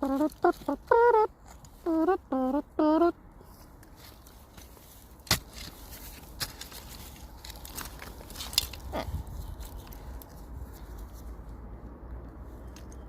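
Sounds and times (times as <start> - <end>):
digging in soil with glass: 3.8 - 11.0.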